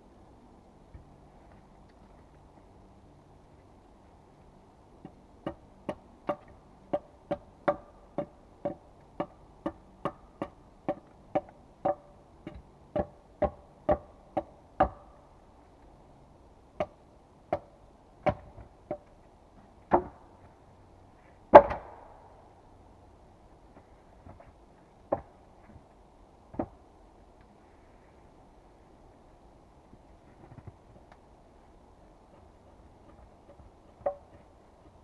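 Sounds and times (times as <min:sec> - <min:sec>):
tool striking wood: 0:05.0 - 0:15.1, 0:16.8 - 0:19.1, 0:19.9 - 0:20.2, 0:21.5 - 0:22.2.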